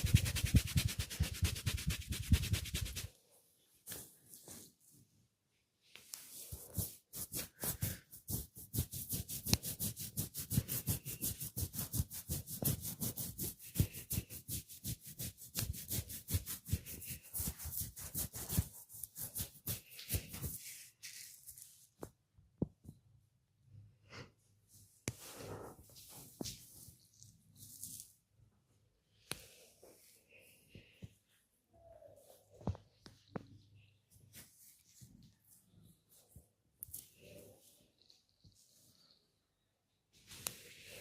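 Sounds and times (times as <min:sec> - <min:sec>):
hands slapping and rubbing skin: 0:00.0 - 0:03.1, 0:06.0 - 0:22.2.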